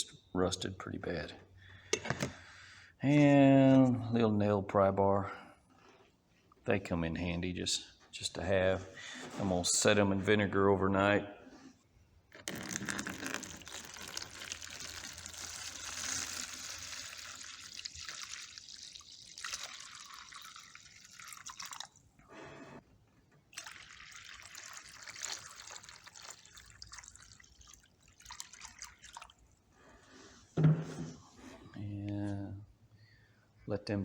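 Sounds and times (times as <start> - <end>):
liquid pouring and splashing: 12.4 - 22.2, 23.5 - 29.7
liquid trickling and dripping: 12.5 - 22.2, 23.5 - 29.7.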